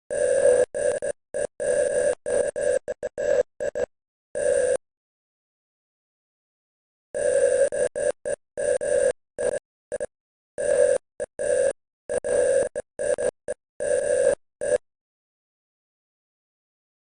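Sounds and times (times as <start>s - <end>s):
morse code beeps: 0.1s - 4.8s, 7.2s - 14.8s.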